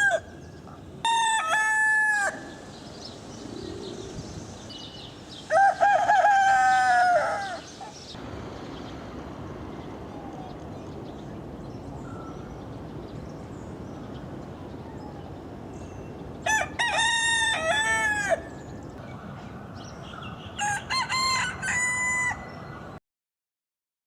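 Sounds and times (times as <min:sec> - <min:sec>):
steady background hiss: 0:00.1 - 0:20.6
rooster crowing: 0:01.0 - 0:02.7, 0:05.5 - 0:07.8, 0:16.5 - 0:18.6, 0:20.6 - 0:22.8.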